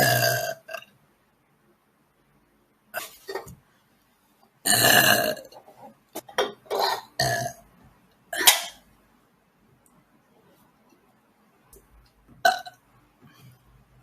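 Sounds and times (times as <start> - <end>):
woman burping: 0.0 - 0.8, 4.7 - 5.5.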